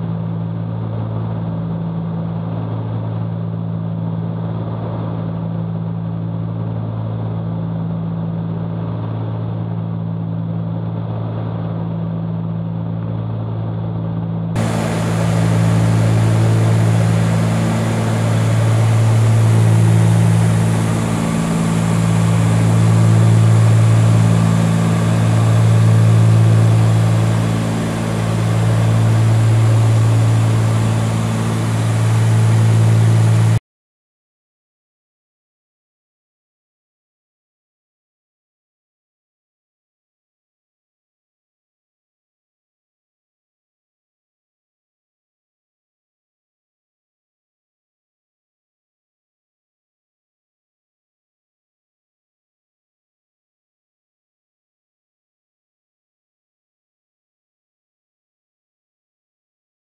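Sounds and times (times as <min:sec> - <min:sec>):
aircraft engines droning: 0:14.6 - 0:33.6.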